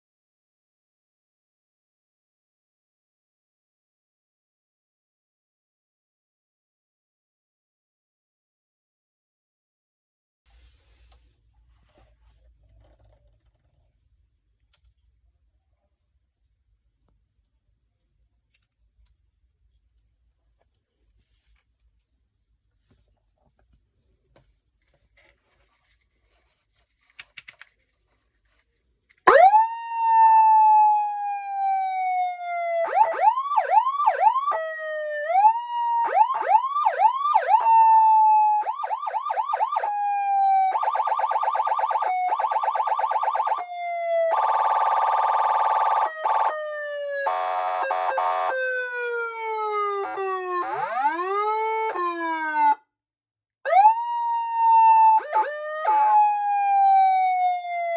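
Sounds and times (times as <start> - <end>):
police siren wailing and yelping: 29.3 - 52.8, 53.7 - 57.9.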